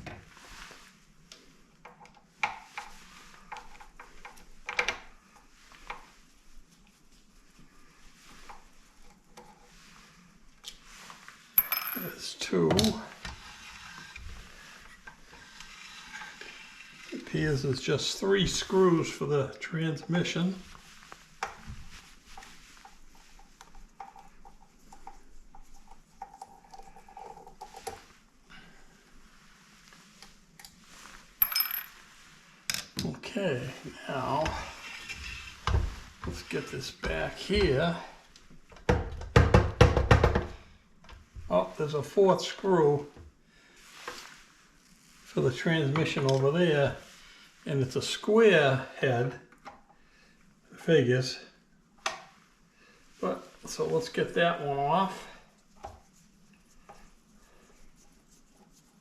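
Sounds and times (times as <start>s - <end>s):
metal clinks: 11.6s - 12.2s, 31.4s - 31.9s.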